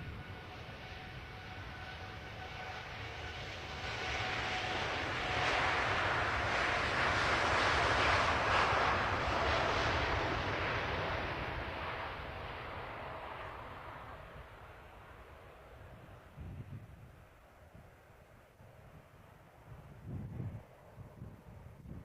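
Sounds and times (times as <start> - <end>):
jet engines roaring: 0.0 - 16.6.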